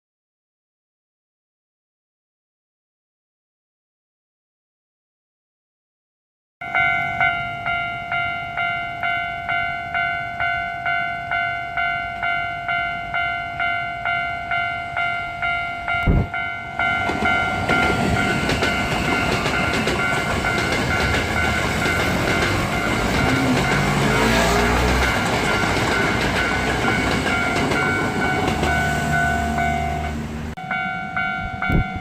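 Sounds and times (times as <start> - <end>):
level crossing warning bell: 6.6 - 32.0
train wheels rumbling on rails: 15.9 - 32.0.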